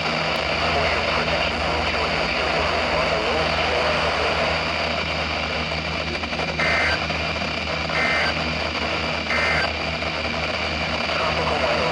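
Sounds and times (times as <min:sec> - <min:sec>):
broadcast hiss and hum: 0:00.0 - 0:11.9
warbling digital data bursts: 0:06.6 - 0:07.0, 0:07.9 - 0:08.4, 0:09.3 - 0:09.7.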